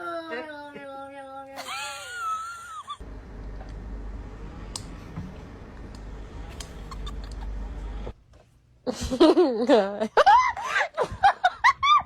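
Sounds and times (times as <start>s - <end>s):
low hum: 3.0s - 8.2s
room noise: 3.0s - 8.6s.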